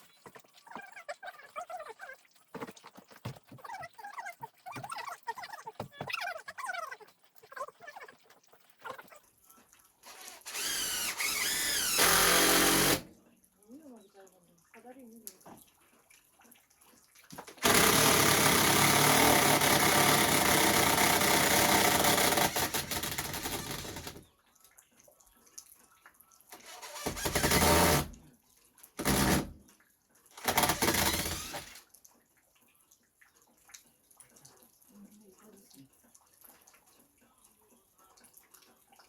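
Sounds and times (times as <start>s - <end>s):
power tool running: 10.1s - 13.1s, 17.6s - 24.2s, 26.6s - 28.1s, 29.0s - 29.5s, 30.4s - 31.8s.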